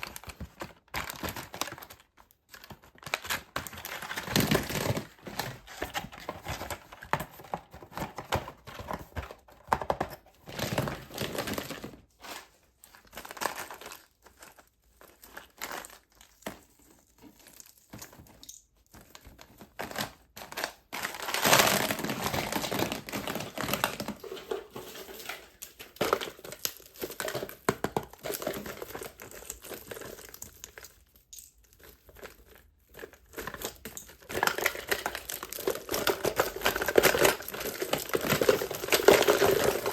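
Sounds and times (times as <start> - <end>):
wrappers crinkling: 19.0 - 39.9.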